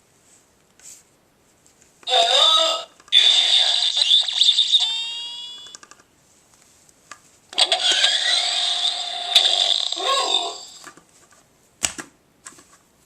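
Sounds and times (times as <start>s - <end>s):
toy electronic sound effects: 2.1s - 5.8s, 7.6s - 10.8s.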